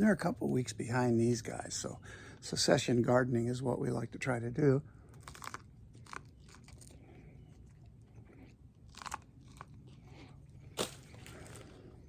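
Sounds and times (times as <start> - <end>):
crunchy chewing of raw corn: 4.8 - 12.0.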